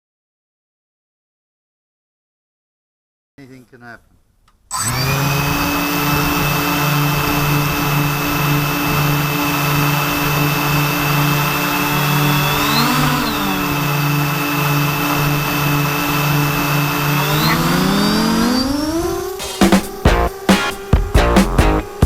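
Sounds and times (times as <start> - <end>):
drone propellers humming: 5.2 - 22.0.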